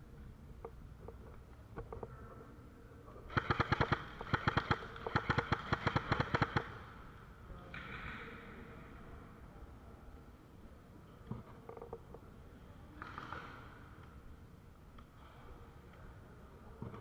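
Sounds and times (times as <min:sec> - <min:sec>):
airsoft gun firing bursts: 0:03.3 - 0:07.1.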